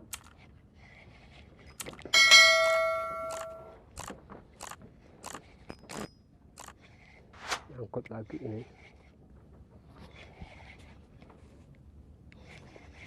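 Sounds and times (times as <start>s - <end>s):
bright metallic ring: 2.2s - 3.7s.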